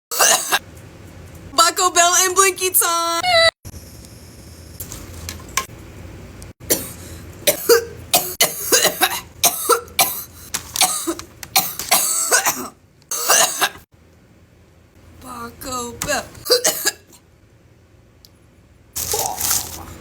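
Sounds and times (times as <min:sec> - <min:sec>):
person coughing hard: 0:00.1 - 0:00.6, 0:06.6 - 0:13.8, 0:16.4 - 0:17.2.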